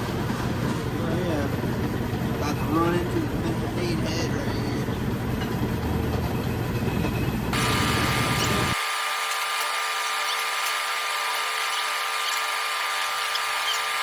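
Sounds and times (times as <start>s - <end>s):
milling machine motor whine: 7.5s - 14.0s.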